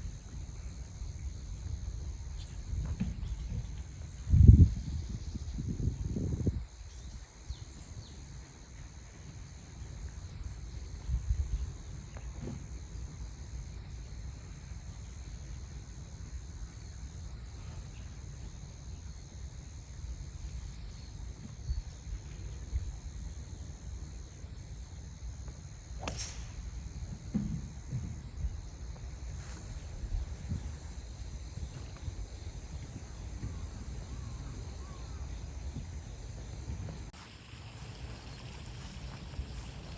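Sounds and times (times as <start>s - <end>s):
wind buffeting microphone: 1.7s - 7.2s
sharp crack: 26.0s - 26.7s
faint high whine: 36.8s - 39.9s.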